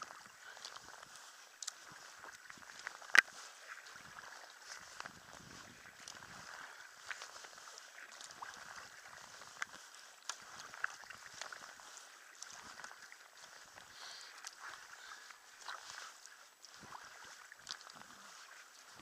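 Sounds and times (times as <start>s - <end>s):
paddle splashing water: 0.0s - 19.0s.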